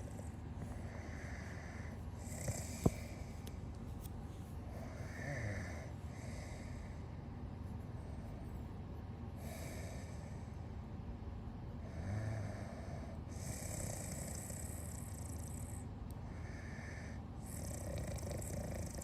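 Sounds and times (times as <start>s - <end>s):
person snoring softly: 0.0s - 3.3s, 4.8s - 7.0s, 9.4s - 10.5s, 11.8s - 19.0s.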